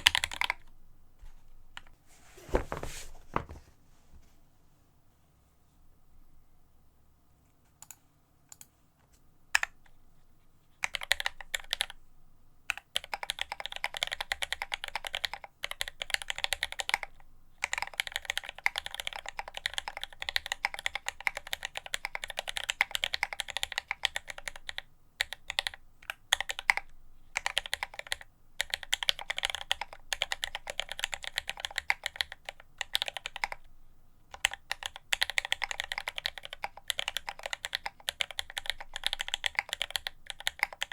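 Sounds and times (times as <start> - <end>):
typing on mechanical keyboard: 0.0 - 0.7, 10.8 - 12.0, 12.7 - 33.7, 34.3 - 40.9.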